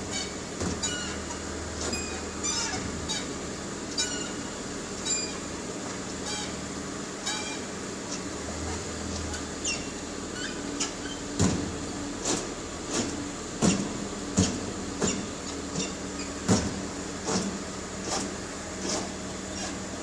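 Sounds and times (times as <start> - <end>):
steady low hum: 0.0 - 20.0
car suspension squeaking: 0.1 - 5.4, 7.2 - 8.2, 9.3 - 11.2, 18.0 - 19.8.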